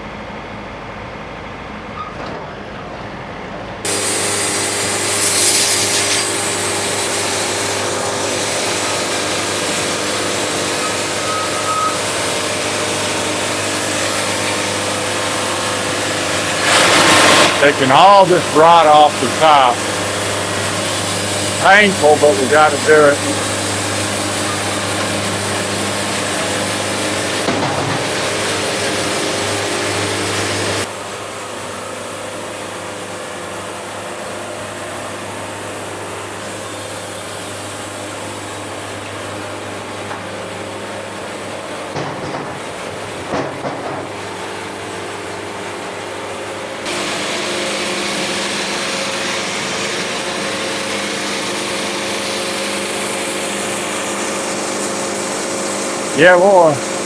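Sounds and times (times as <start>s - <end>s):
band sawmill engine humming: 3.1s - 57.0s
band saw cutting log: 3.9s - 30.9s, 36.9s - 57.0s
short knocks: 41.9s - 44.4s.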